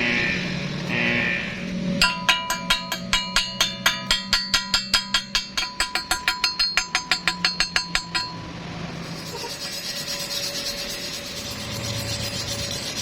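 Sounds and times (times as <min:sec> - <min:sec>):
hammer tapping on steel: 0:02.0 - 0:08.5.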